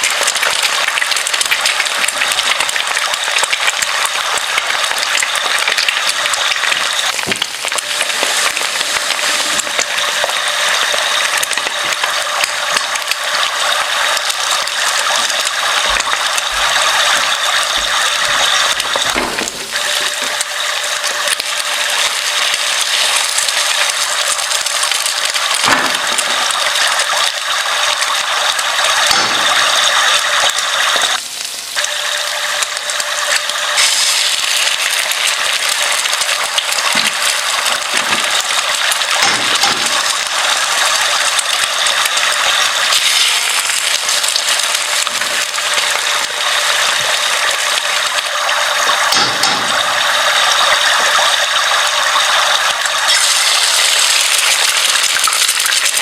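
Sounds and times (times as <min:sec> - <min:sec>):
kitchen gadget ratcheting and grinding: 0:00.0 - 0:27.1, 0:28.1 - 0:31.1, 0:33.2 - 0:47.7, 0:48.7 - 0:56.0.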